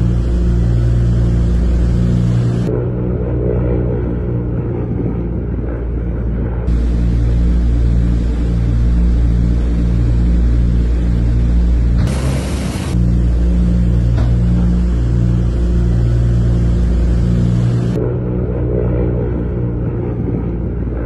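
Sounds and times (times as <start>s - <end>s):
aircraft engines droning: 0.0s - 21.0s
burst of hiss: 12.1s - 13.0s.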